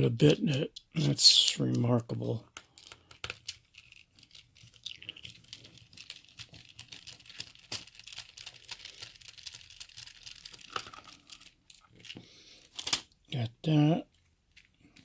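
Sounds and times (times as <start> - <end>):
small clicks and scrapes: 2.4 - 13.1, 14.1 - 15.0.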